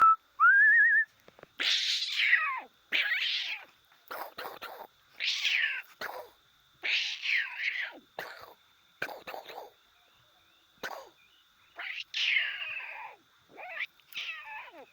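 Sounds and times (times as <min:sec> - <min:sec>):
cat meowing: 0:13.6 - 0:14.8.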